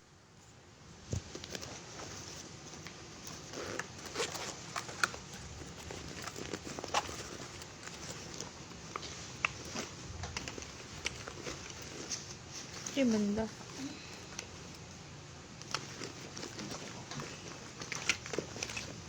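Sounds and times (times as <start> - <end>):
rustling: 0.3 - 19.0.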